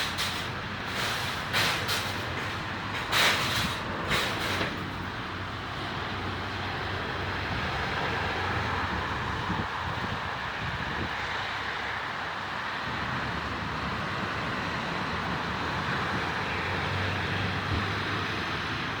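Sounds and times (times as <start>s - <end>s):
vehicle engine humming: 0.0s - 9.4s.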